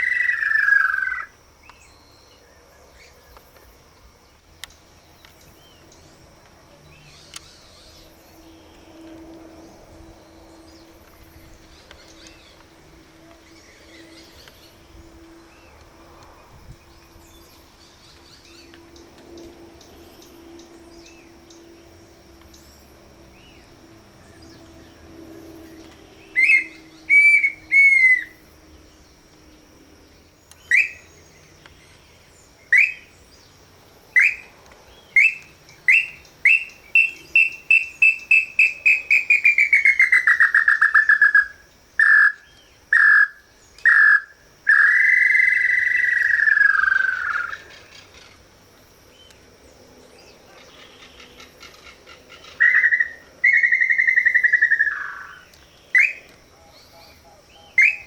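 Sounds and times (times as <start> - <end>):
bird whistling calls: 0.0 - 1.3, 26.2 - 28.4, 30.6 - 31.1, 32.7 - 33.2, 34.2 - 34.5, 35.1 - 47.7, 50.8 - 56.3, 57.0 - 58.0
faint insect drone: 0.0 - 58.0.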